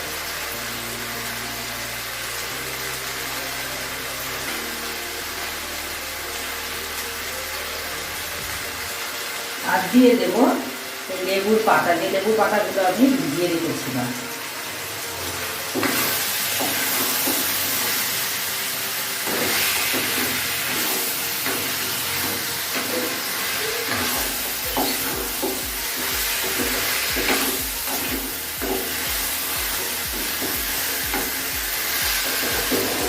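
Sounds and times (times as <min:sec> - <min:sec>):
chicken sizzling in oil: 0:00.0 - 0:33.0
spatula knocking and scraping pan: 0:23.9 - 0:31.5, 0:32.4 - 0:33.0.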